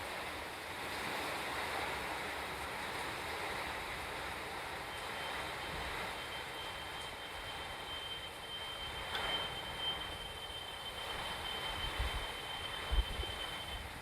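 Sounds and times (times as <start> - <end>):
heavy rainfall: 0.0 - 14.0.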